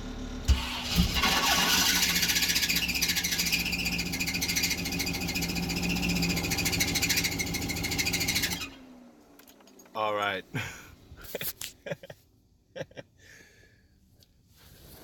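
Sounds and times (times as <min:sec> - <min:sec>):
engine cross-firing: 0:00.0 - 0:10.0
loud high screech: 0:00.8 - 0:08.8.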